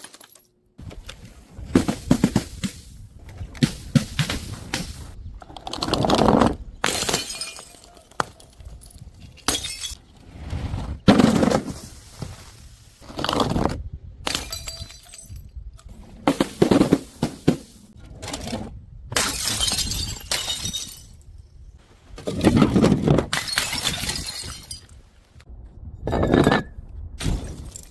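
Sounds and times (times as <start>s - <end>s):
glass bottles smashing: 6.8s - 8.0s, 8.8s - 10.0s, 14.3s - 15.5s, 19.2s - 21.3s, 23.3s - 25.0s, 27.2s - 27.9s.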